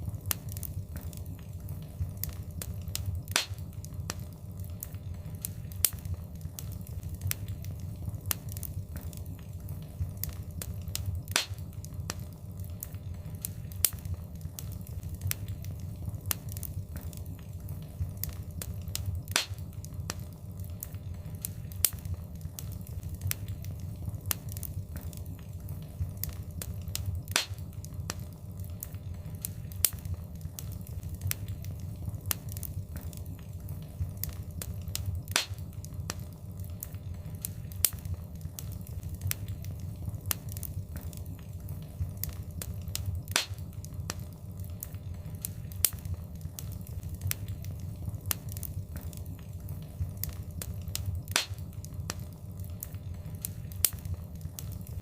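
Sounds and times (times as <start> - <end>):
fire crackling and rumbling: 0.0 - 55.0
loud fire pop: 3.3 - 3.6, 19.3 - 19.6, 27.3 - 27.6, 35.3 - 35.6, 43.3 - 43.6, 51.3 - 51.6.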